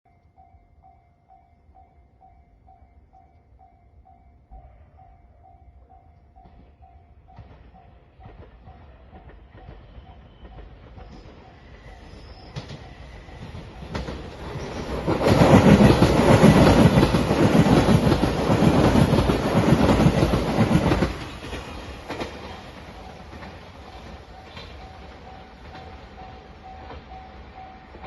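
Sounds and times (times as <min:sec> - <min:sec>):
train wheels clattering over rails: 0:06.4 - 0:28.0.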